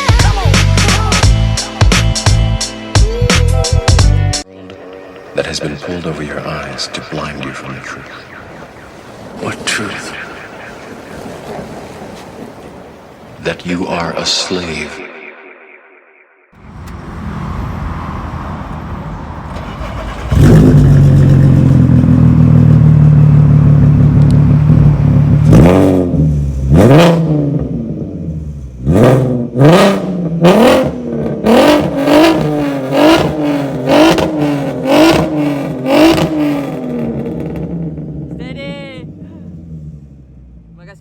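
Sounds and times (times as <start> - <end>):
car engine revving: 4.4 - 11.2, 13.9 - 41.0.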